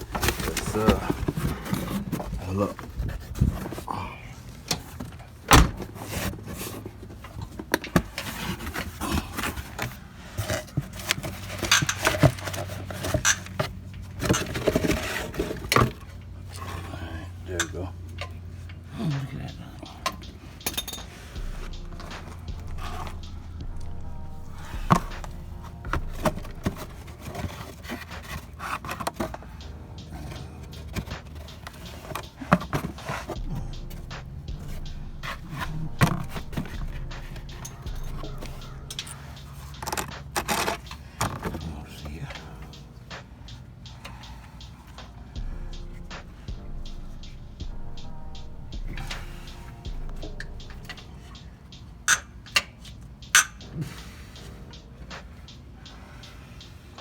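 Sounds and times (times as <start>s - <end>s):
metal tools clanking: 0.0s - 21.4s
steady low hum: 8.5s - 28.3s, 29.3s - 40.2s, 41.6s - 52.1s
low hum: 21.3s - 27.4s, 33.4s - 39.5s, 45.4s - 51.4s.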